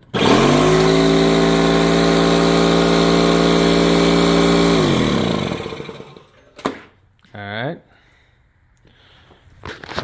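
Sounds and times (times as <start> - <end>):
air compressor running: 0.0 - 6.5.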